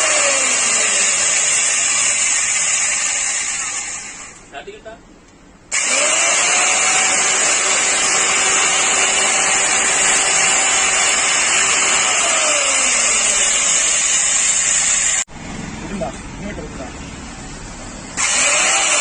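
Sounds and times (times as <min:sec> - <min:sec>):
electric chainsaw running: 0:00.0 - 0:04.4, 0:05.7 - 0:15.3, 0:18.2 - 0:19.0.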